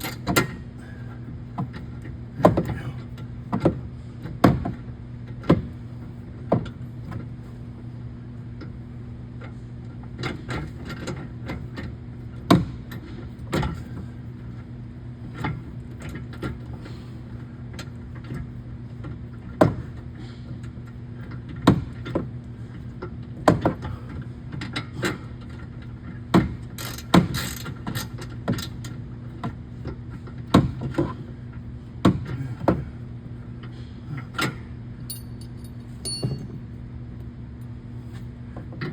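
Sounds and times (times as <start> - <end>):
steady low hum: 0.0 - 10.1, 29.4 - 38.9
hand tools clicking on metal: 35.1 - 36.6.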